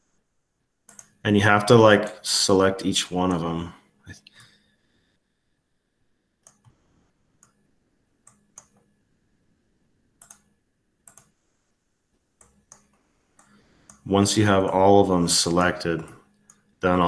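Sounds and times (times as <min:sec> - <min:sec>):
computer mouse clicking: 0:00.9 - 0:01.2, 0:06.4 - 0:06.8, 0:08.2 - 0:08.9, 0:10.2 - 0:11.4, 0:12.4 - 0:14.1.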